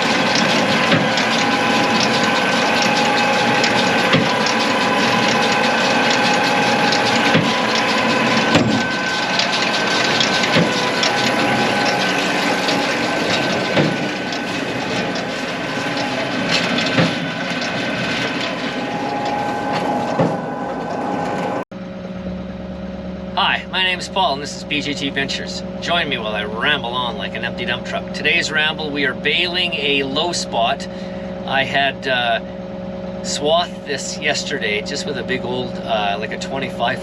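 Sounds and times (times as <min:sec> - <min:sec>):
short mechanical knocks: 0:00.0 - 0:20.4
tractor and baler clattering: 0:00.0 - 0:21.5, 0:23.5 - 0:32.6, 0:33.2 - 0:37.0
held machine tones: 0:00.0 - 0:21.6.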